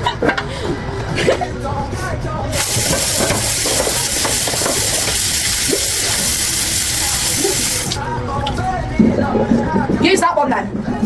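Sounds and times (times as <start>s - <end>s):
tap water running into sink: 2.5s - 8.0s.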